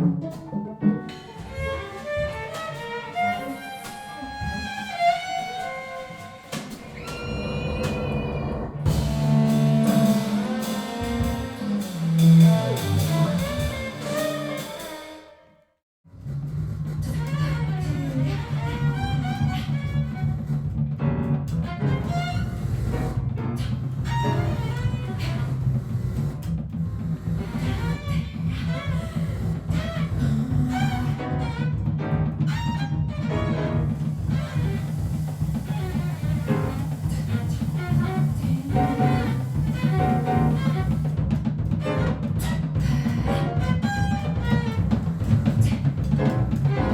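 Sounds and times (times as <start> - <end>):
free-improvised bowed string ensemble: 0.0 - 8.0, 27.0 - 46.9.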